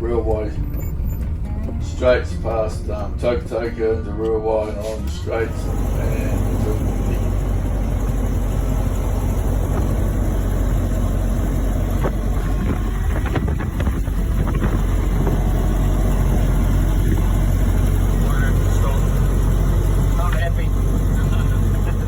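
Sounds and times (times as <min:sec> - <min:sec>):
car engine rumbling: 0:00.0 - 0:22.0
knocks and rattles: 0:06.4 - 0:15.8
wind on microphone: 0:11.8 - 0:16.0.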